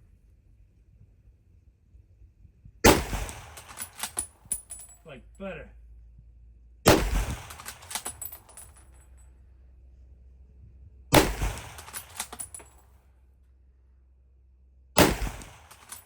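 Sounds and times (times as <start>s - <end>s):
rifle shots: 2.8s - 4.3s, 6.9s - 8.5s, 11.1s - 12.7s, 15.0s - 16.0s.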